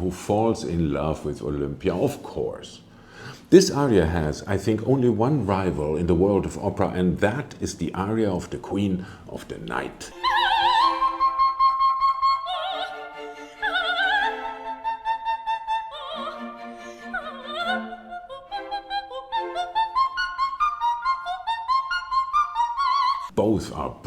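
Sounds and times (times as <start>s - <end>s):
orchestral accompaniment: 10.1s - 15.0s
operatic soprano singing: 10.1s - 23.3s.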